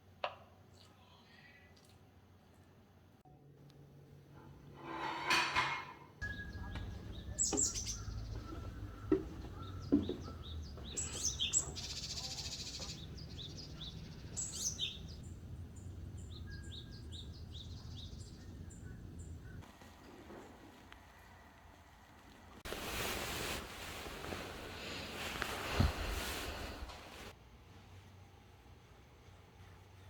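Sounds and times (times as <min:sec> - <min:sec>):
buzzy bird trill: 0:06.2 - 0:09.0
songbirds chirping: 0:06.2 - 0:19.7.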